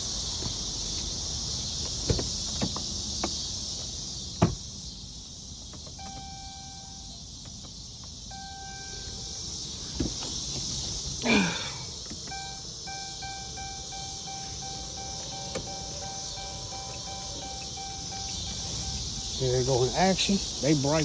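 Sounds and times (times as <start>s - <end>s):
crickets trilling: 0.0s - 21.0s
electronic beeps: 6.0s - 7.2s, 8.3s - 9.3s, 12.3s - 19.4s.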